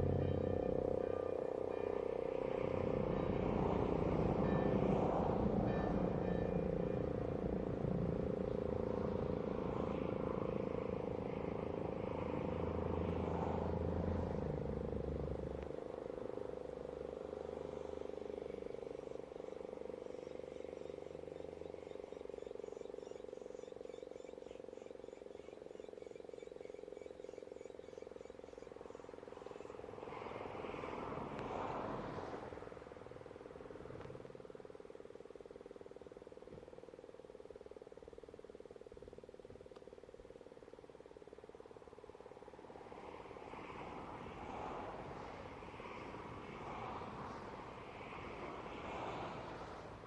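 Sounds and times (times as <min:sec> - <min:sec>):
low rumble: 0:00.0 - 0:04.3
fire siren steady note: 0:00.0 - 0:32.4.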